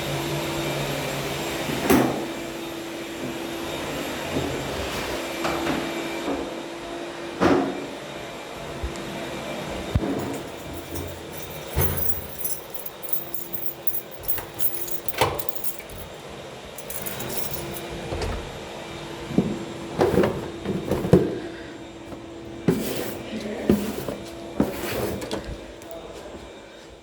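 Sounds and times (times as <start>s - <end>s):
objects knocking and rattling: 10.0s - 16.1s, 16.8s - 17.9s.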